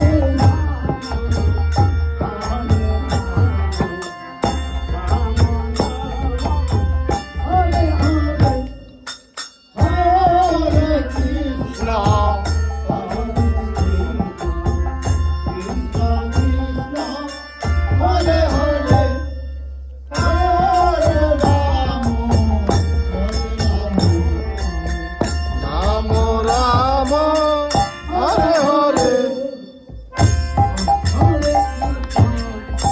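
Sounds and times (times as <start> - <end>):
devotional singing: 0.0 - 32.9
hand percussion: 0.0 - 32.9
deep bass beat: 17.9 - 28.6, 30.0 - 32.9.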